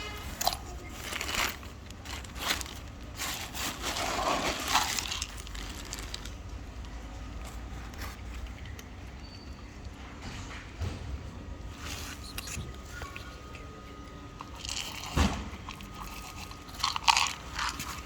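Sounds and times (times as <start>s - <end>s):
crackling and rustling: 0.0s - 9.0s.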